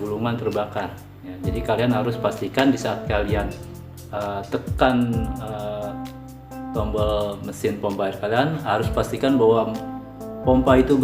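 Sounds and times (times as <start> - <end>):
background music with held notes: 0.0 - 11.0
person speaking: 6.7 - 11.0.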